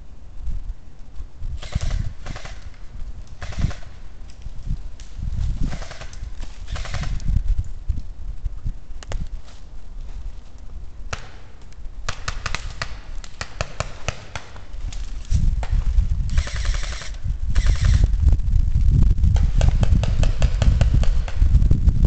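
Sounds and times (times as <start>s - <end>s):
low rumble on microphone: 0.0s - 13.2s, 14.5s - 22.0s
air gun shots: 1.6s - 2.8s, 3.4s - 4.0s, 6.7s - 7.2s.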